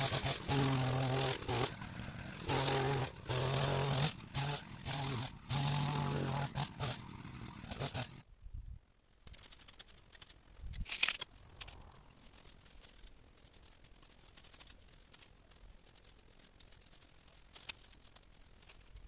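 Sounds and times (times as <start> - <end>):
hedge trimmer bursts: 0.0 - 8.2.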